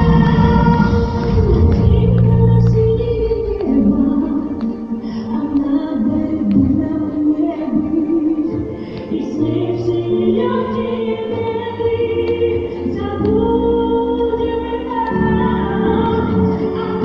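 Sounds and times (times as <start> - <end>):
singing in held chords: 0.0 - 17.0.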